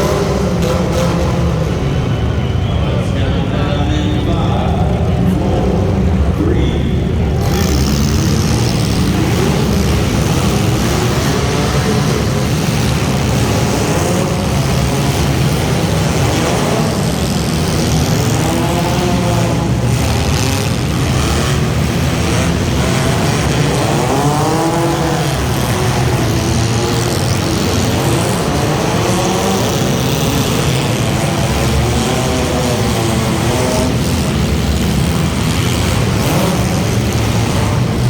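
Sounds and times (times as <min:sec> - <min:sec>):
race car engines revving: 0:00.0 - 0:38.0.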